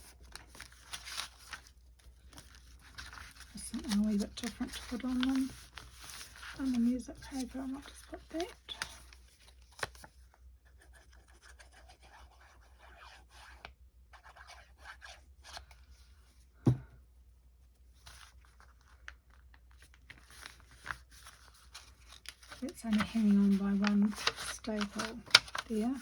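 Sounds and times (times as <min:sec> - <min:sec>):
paper rustling and crinkling: 0:00.0 - 0:10.4, 0:18.0 - 0:26.0.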